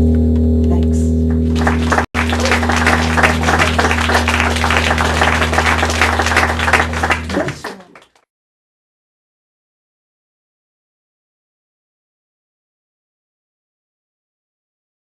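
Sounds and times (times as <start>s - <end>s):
steady low hum: 0.0s - 7.7s
audience applauding: 1.4s - 8.3s.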